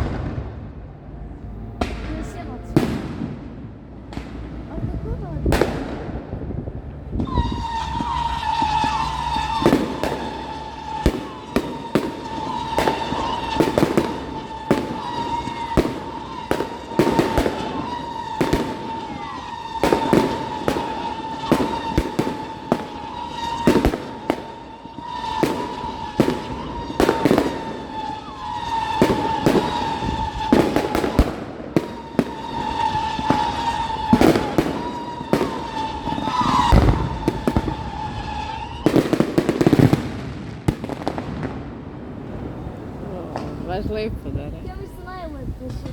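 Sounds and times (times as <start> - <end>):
fireworks bangs: 0.0 - 45.9
high whistling tone: 7.2 - 23.8, 34.8 - 39.0.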